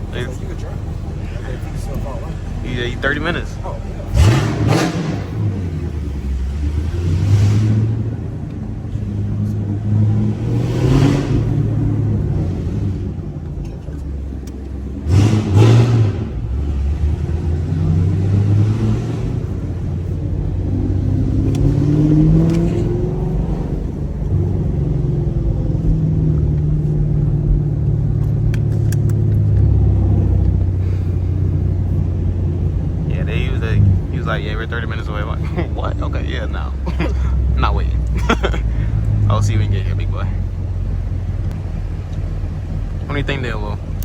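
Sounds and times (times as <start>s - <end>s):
car engine accelerating: 0.0s - 44.0s.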